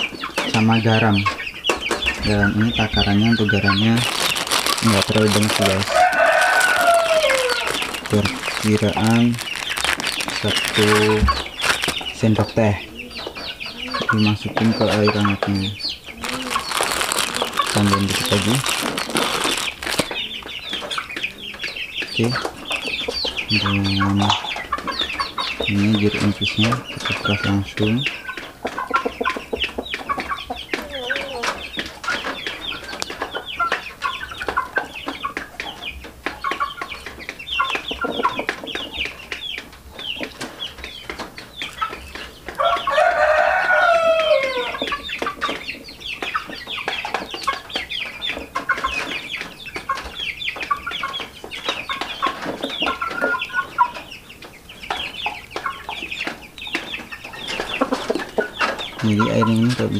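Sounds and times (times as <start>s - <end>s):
chickens clucking: 0.0s - 59.9s
rooster crowing: 5.1s - 8.2s, 42.6s - 44.9s.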